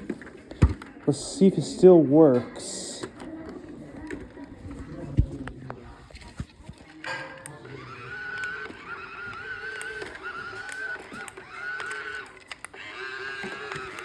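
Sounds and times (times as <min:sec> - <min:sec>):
toy robot motors whining: 0:07.4 - 0:14.0.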